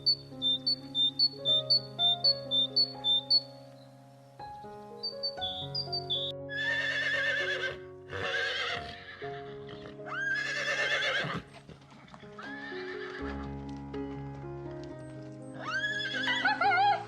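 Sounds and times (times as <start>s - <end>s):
background music: 0.0s - 17.0s
horse whinnying: 6.5s - 13.3s, 15.6s - 17.0s.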